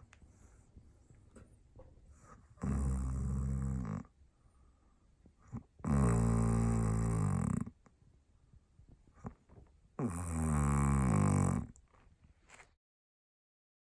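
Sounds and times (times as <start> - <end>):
man snoring loudly: 2.6 - 4.0, 5.8 - 7.7, 10.0 - 11.7.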